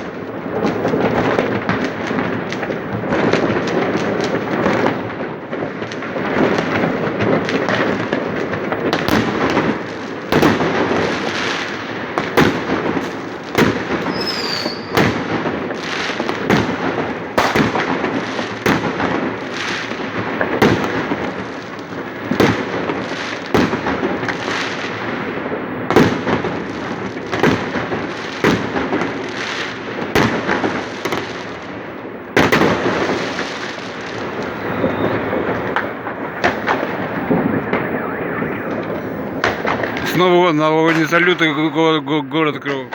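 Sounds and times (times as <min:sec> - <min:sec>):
fireworks sharp bangs: 0:00.0 - 0:42.0
fireworks crackle and rumble: 0:00.0 - 0:42.9
falling whistle: 0:14.1 - 0:15.0, 0:34.2 - 0:39.8.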